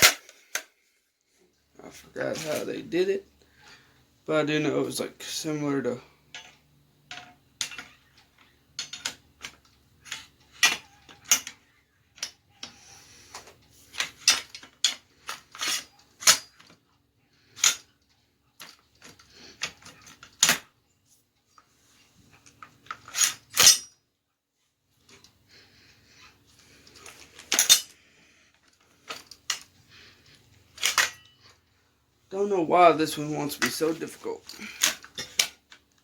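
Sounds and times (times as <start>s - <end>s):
shotgun metal parts clicking: 6.3s - 12.8s, 22.4s - 23.9s, 26.8s - 28.0s, 30.7s - 31.5s, 33.6s - 35.9s.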